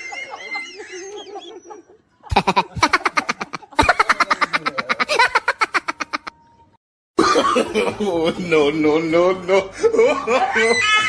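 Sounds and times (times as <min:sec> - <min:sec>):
high wavering laugh: 0:00.0 - 0:06.4, 0:09.7 - 0:11.0
rapid ha ha laugh: 0:00.0 - 0:06.4, 0:09.8 - 0:11.0.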